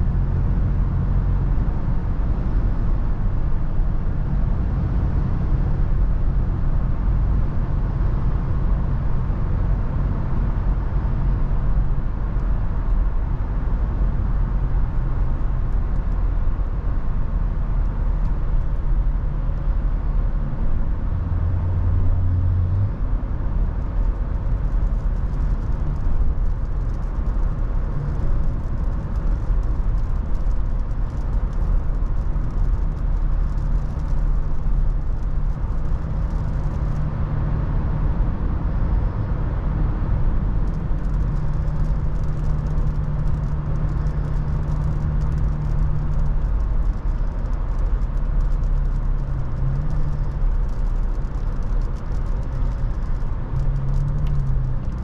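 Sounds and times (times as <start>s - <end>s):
car engine hum: 0.0s - 55.0s
road and wind noise: 0.0s - 55.0s.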